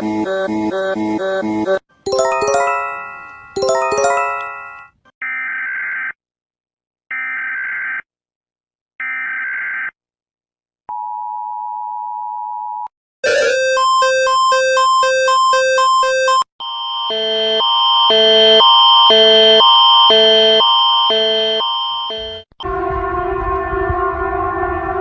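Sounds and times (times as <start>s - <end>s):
descending chime strikes: 2.1s - 4.7s
two-tone attention signal: 13.2s - 16.5s
beeping alarm: 13.2s - 22.5s.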